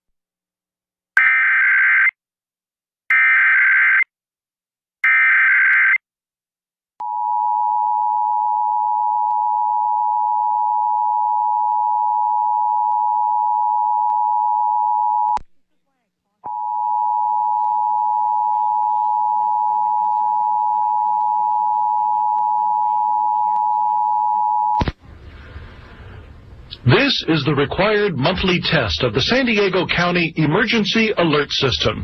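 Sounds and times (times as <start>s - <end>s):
two-tone attention signal: 16.5s - 24.8s.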